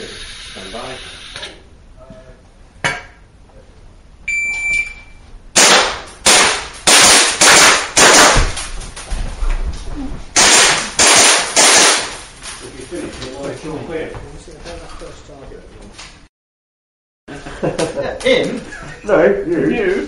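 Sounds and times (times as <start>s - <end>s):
shot timer beep: 4.3s - 5.2s
gunshots echoing indoors: 5.6s - 8.6s, 10.4s - 12.2s.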